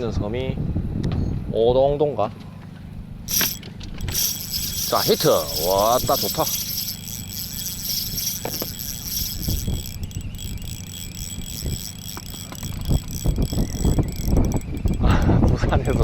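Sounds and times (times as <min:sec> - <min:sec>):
fishing boat engine hum: 0:03.3 - 0:16.0
spinning reel clicking: 0:03.3 - 0:16.0.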